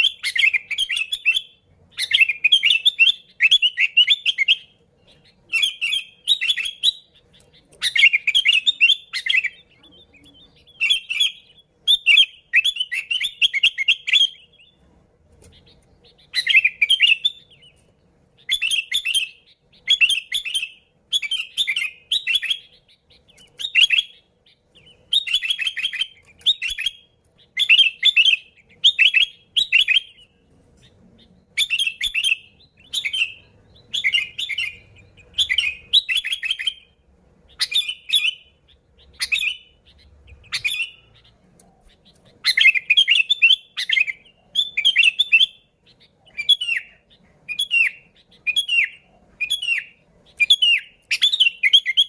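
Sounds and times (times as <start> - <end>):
bulbul chattering chirps: 0.0 - 52.0.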